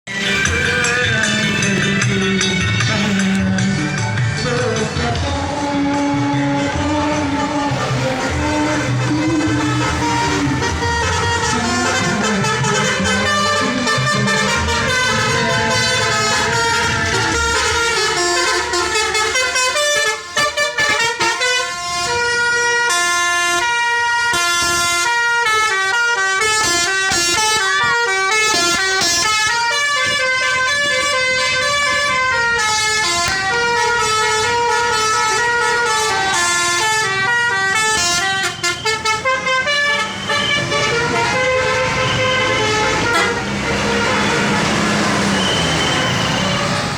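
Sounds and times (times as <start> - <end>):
multi-tone air horns: 5.7 - 46.9.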